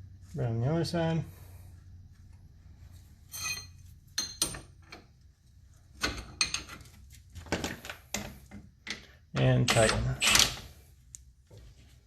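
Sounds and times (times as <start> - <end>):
metal tools clinking: 3.2 - 5.1
short metallic ring: 3.3 - 4.6.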